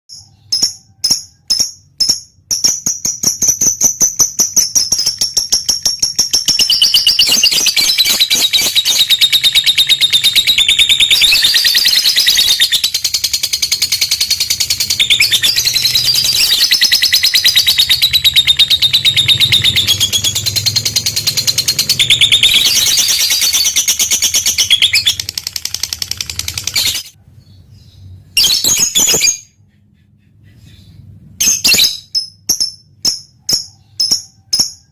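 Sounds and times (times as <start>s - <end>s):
lovebird rapid chattering trill: 0.1s - 27.2s
lovebird shrill chirps: 0.1s - 27.2s.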